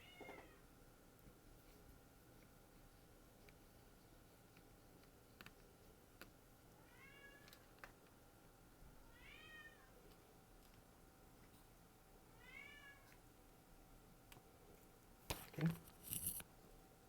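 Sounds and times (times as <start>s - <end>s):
cat meowing faintly: 6.8s - 7.6s, 9.0s - 10.0s, 12.4s - 13.2s.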